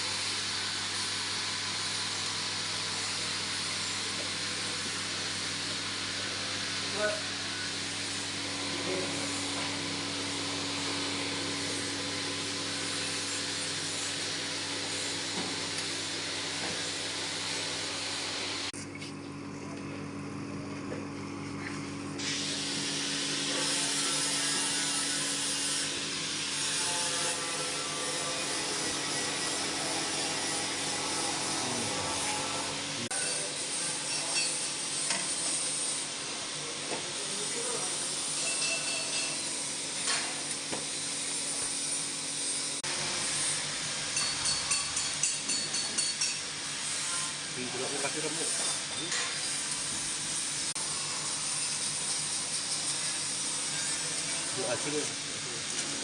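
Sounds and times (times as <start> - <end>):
drying machine motor and fan hum: 0.0 - 56.0.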